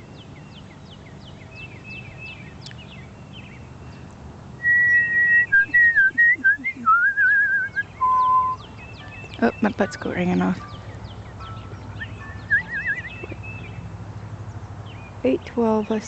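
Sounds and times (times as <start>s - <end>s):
small birds chirping: 0.0s - 16.0s
person whistling: 4.6s - 8.6s, 12.0s - 13.2s.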